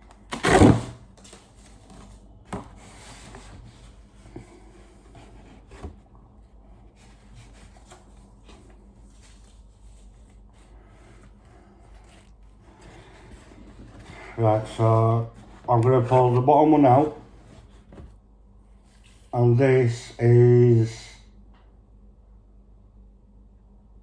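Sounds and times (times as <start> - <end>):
cardboard boxes rubbing and sliding: 0.3 - 6.0, 6.8 - 18.2.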